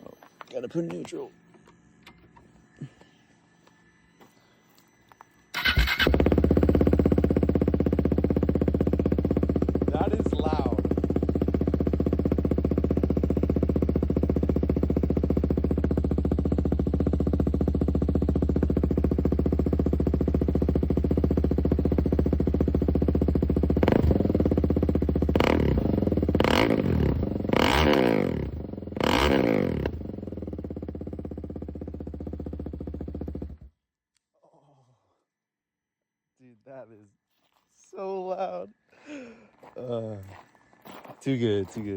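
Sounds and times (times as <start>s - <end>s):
motorcycle engine idling and revving: 5.6s - 33.9s.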